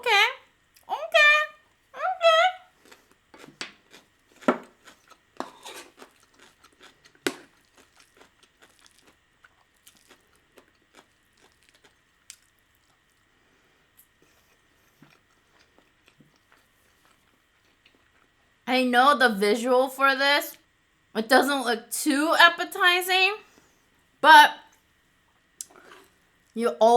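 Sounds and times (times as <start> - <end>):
close-up chewing and mouth noises: 2.7 - 18.6, 24.8 - 26.6.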